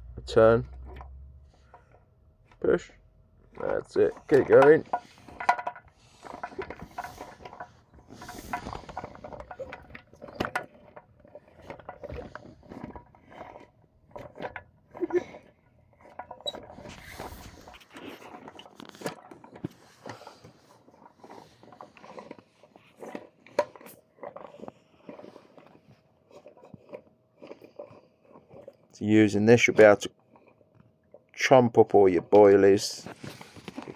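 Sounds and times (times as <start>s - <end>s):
grinder crunching bait: 2.5s - 30.6s.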